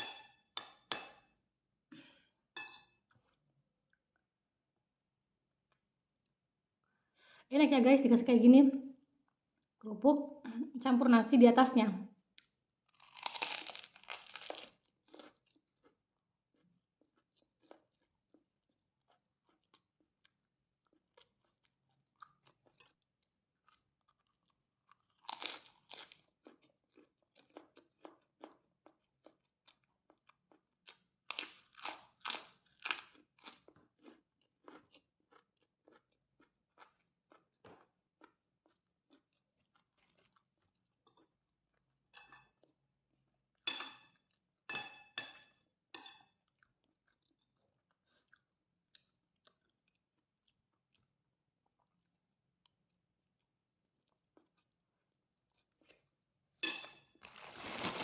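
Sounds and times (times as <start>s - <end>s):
crunchy chewing: 12.9s - 23.0s, 23.6s - 41.9s.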